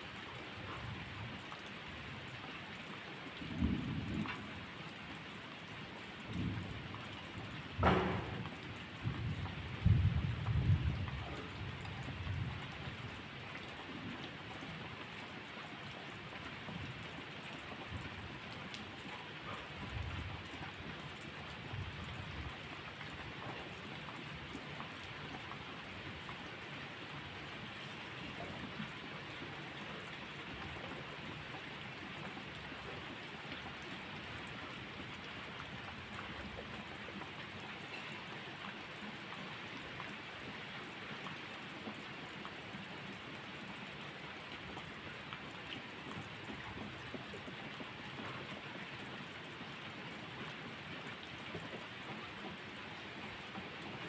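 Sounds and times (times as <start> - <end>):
heavy rain pattering: 0.0 - 54.0
thunder rumbles: 7.6 - 11.2.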